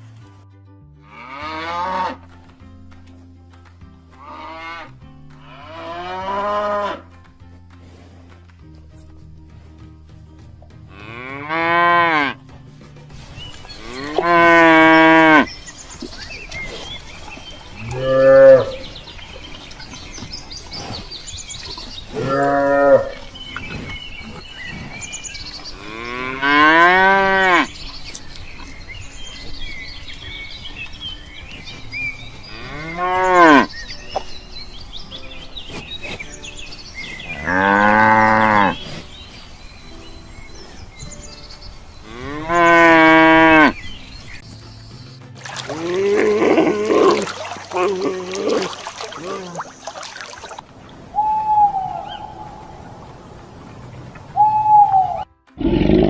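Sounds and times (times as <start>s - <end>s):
cow mooing: 1.0s - 2.2s, 13.8s - 15.5s, 17.8s - 18.9s, 22.2s - 23.2s, 25.8s - 27.7s, 37.3s - 38.8s, 42.0s - 43.8s, 45.7s - 49.6s.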